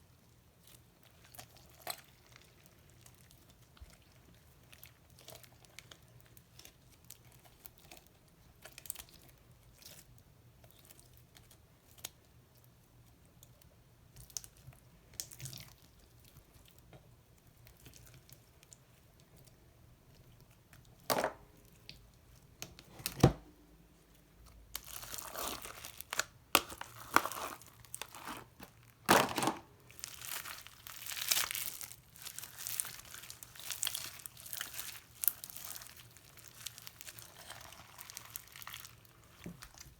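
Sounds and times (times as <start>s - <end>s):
slime crackling and popping: 24.8s - 39.9s.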